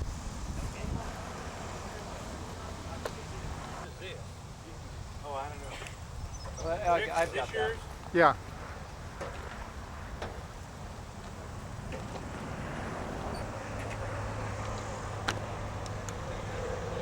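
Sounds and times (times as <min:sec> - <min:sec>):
vehicle engine running: 0:07.9 - 0:17.0.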